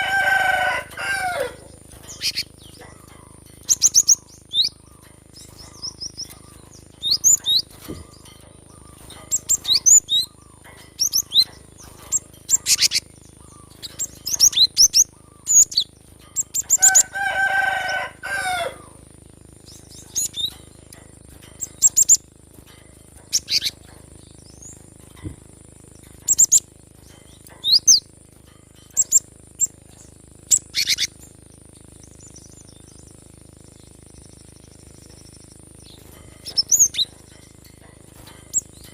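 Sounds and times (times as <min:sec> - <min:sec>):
rooster crowing: 0:00.0 - 0:02.3, 0:16.7 - 0:19.1
bird calling and singing: 0:00.0 - 0:38.9.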